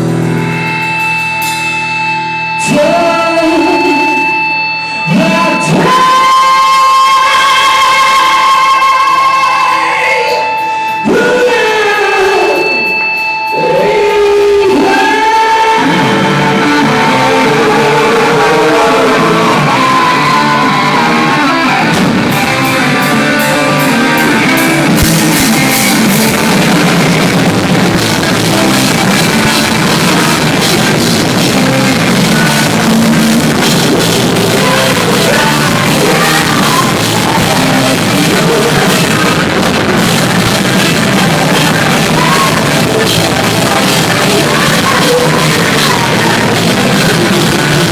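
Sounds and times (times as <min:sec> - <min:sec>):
cymbals crashing: 0:00.0 - 0:05.8, 0:18.6 - 0:47.3
drum kit: 0:00.0 - 0:47.9
electric guitar: 0:00.0 - 0:47.9
live rock band playing: 0:00.0 - 0:47.9
person singing: 0:02.5 - 0:47.9.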